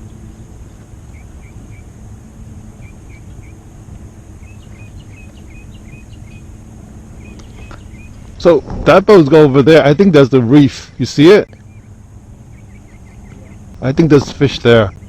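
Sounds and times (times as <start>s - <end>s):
bird chirping: 0.0s - 2.0s, 2.7s - 3.6s, 4.3s - 8.7s, 10.7s - 15.0s
steady low rumble: 0.0s - 15.0s.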